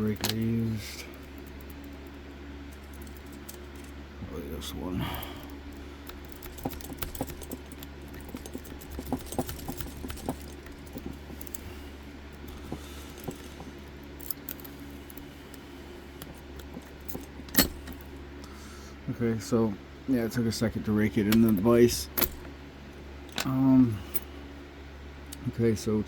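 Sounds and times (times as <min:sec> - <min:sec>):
lock pick scraping and clicking: 0:06.0 - 0:11.7, 0:16.2 - 0:18.0, 0:22.2 - 0:22.5.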